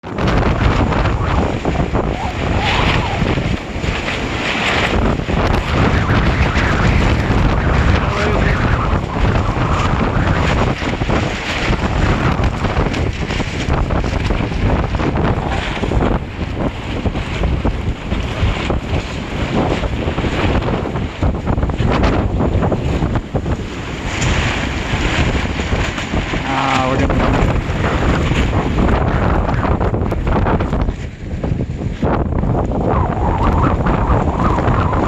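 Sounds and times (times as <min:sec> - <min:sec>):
strong wind buffeting microphone: 0:00.0 - 0:35.0.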